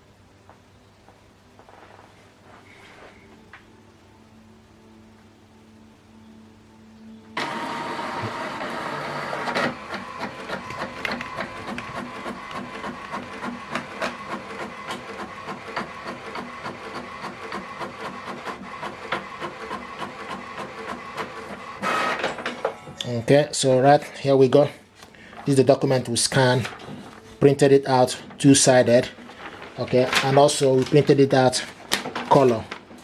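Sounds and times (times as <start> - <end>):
printer clicks and ticks: 7.4 - 22.6
printer mechanical whir: 7.4 - 22.8.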